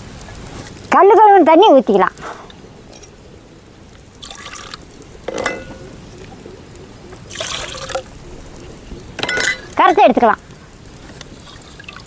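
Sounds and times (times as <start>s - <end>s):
water pouring into pot: 2.4s - 12.0s
metal pot ringing: 5.2s - 5.9s, 9.2s - 10.0s.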